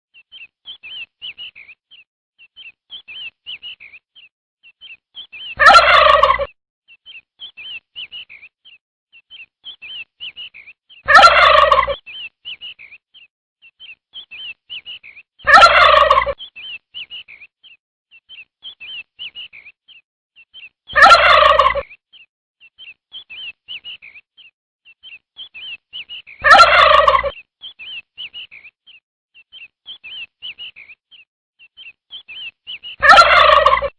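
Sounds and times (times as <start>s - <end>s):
chicks peeping: 4.8s - 6.5s, 9.6s - 13.0s, 14.1s - 17.4s, 20.6s - 21.9s, 25.1s - 28.7s, 31.8s - 33.9s
loud fowl call: 5.6s - 6.5s, 11.1s - 12.0s, 15.4s - 16.4s, 20.9s - 21.8s, 26.4s - 27.3s, 33.0s - 33.9s.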